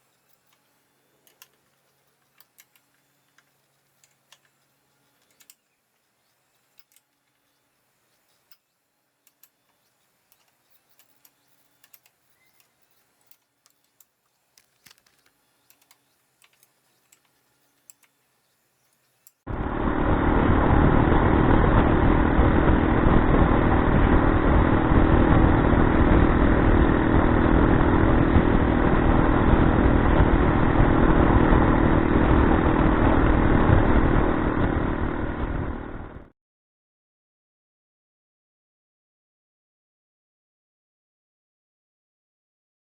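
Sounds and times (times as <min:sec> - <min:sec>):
motorcycle engine riding: 0:19.5 - 0:36.3
wind noise on microphone: 0:19.5 - 0:36.3.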